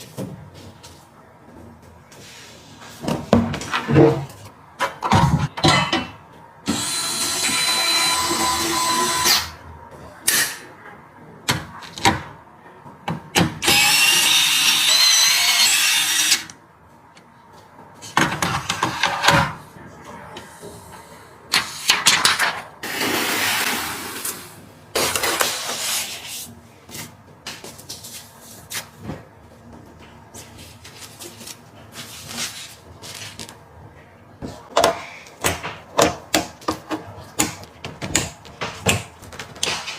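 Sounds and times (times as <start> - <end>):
electric screwdriver whirring: 13.6 - 16.5.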